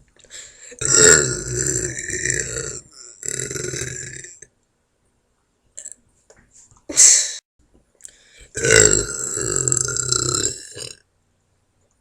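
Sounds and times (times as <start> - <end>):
long loud burp: 0.8 - 4.4, 8.5 - 11.0.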